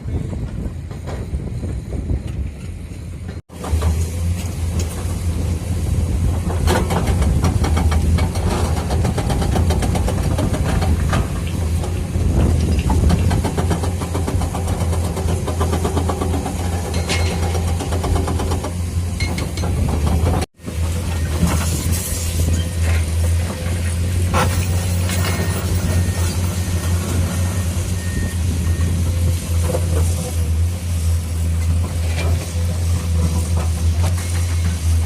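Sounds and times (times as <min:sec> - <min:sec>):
excavator diesel engine: 0:00.0 - 0:35.0
clanks and rattles: 0:06.3 - 0:21.8.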